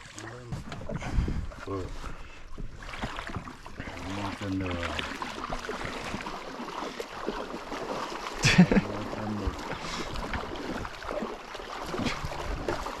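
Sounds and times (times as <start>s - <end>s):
paddles dipping in water: 0.0s - 13.0s
loud splash: 2.9s - 13.0s.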